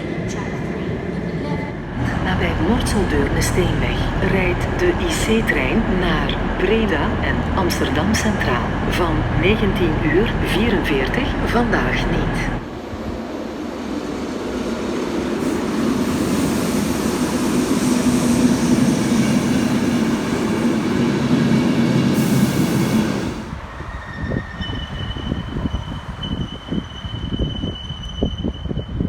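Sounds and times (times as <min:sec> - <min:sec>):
train rumbling on tracks: 0:00.0 - 0:29.0
steady high whine: 0:01.8 - 0:12.8.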